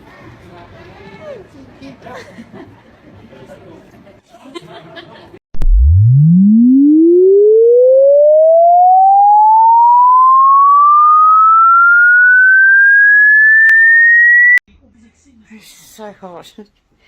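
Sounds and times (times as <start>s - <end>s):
electronic tone sweeping upward: 5.6s - 14.6s.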